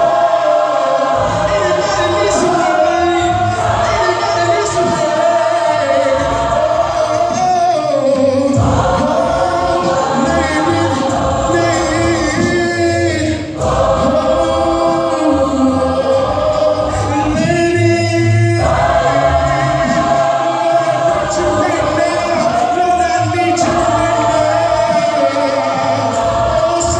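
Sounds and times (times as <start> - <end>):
gospel choir singing: 0.0 - 26.9.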